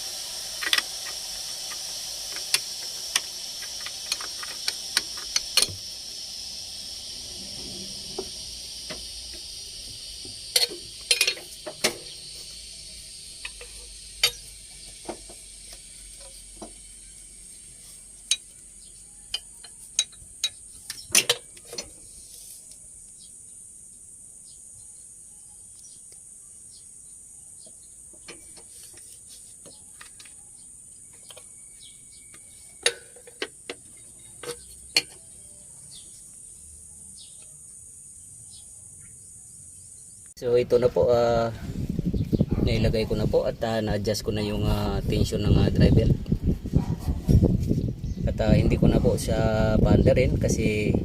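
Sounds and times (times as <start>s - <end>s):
hand tools clicking on metal: 0.6s - 5.8s, 10.5s - 12.0s, 19.3s - 21.9s, 32.3s - 35.2s.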